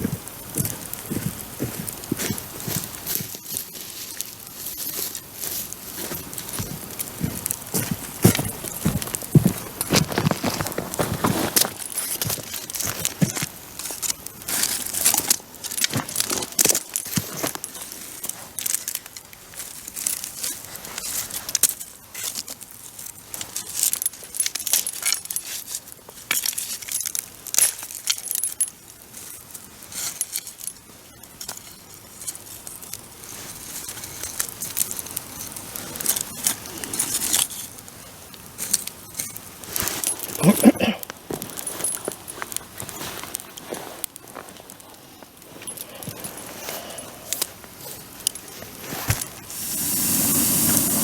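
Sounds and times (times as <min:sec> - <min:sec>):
bonfire crackling and popping: 0:00.0 - 0:51.0.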